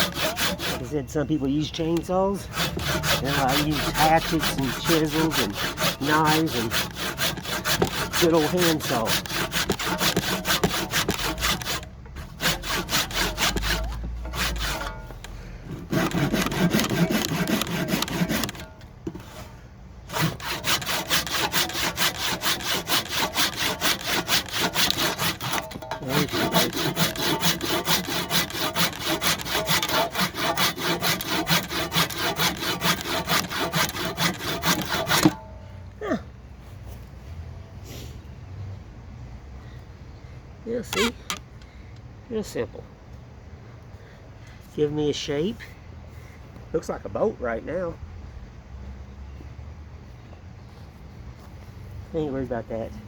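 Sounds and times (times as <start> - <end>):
handsaw cutting wood: 0.0 - 19.5, 20.1 - 35.4, 41.0 - 41.3.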